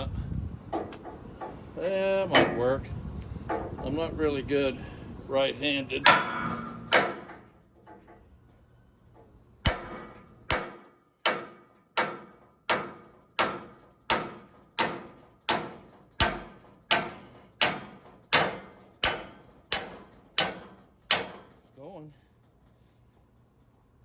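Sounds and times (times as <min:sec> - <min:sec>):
hammer striking metal drift: 0:06.0 - 0:07.5, 0:09.6 - 0:21.6.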